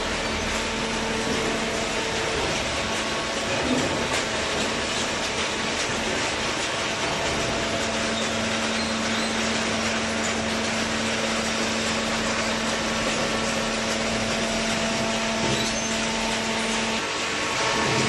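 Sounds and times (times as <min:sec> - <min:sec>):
paper baler machine running: 0:00.0 - 0:18.0.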